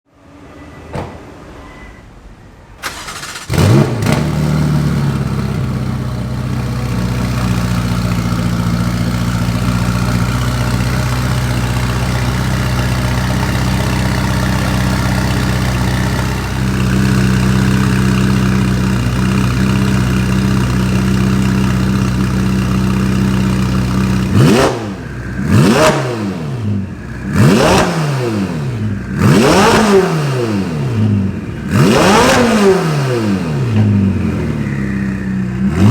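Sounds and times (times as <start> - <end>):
car engine starting and idling: 2.8 - 30.0
engine revving: 2.8 - 35.9.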